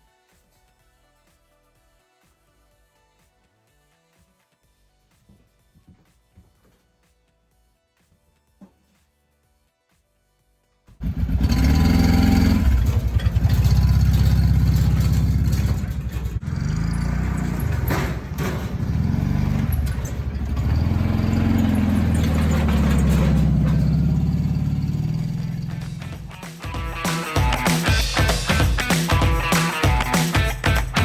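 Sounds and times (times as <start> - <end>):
clatter: 11.0 - 26.5
machine engine throbbing: 11.0 - 29.4.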